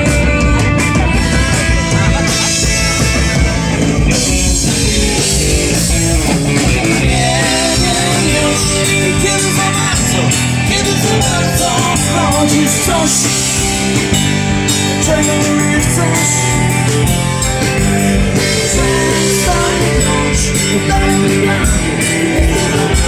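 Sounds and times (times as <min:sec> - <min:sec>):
live rock song: 0:00.0 - 0:23.0.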